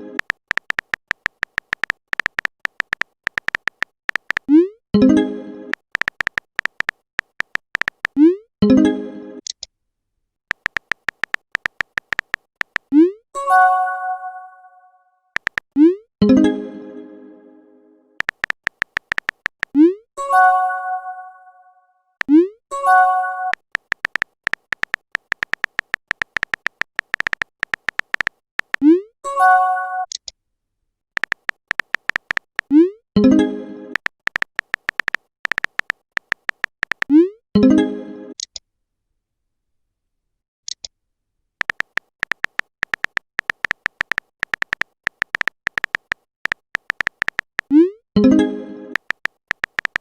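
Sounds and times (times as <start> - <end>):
high pops: 0.2 - 4.6, 5.8 - 8.3, 10.5 - 12.9, 15.4 - 15.7, 18.2 - 19.8, 23.6 - 28.9, 31.2 - 32.8, 34.0 - 37.1, 41.6 - 47.8, 49.0 - 50.0
typing clicks: 0.2 - 4.7, 5.7 - 8.4, 10.5 - 13.0, 15.4 - 15.8, 18.2 - 19.9, 23.5 - 29.0, 31.2 - 32.8, 33.9 - 37.2, 41.6 - 47.8, 48.9 - 50.0.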